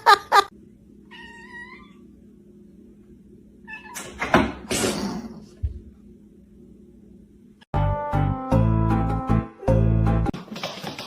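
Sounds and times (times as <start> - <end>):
cat meowing: 1.1 - 2.0.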